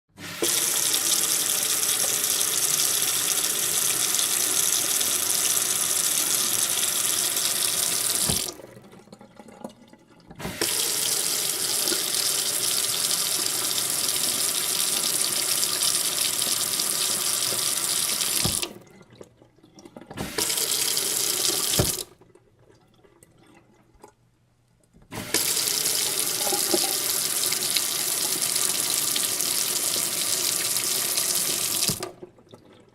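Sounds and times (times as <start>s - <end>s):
tap running into sink: 6.2s - 8.6s, 16.3s - 18.8s, 20.2s - 22.1s, 25.1s - 27.3s, 29.9s - 32.2s.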